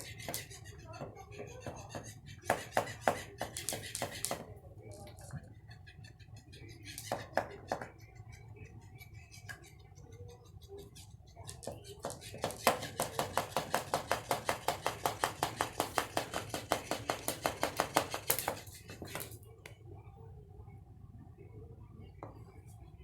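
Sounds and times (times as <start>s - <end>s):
fish toy tail tapping: 0.0s - 5.4s, 10.9s - 19.8s.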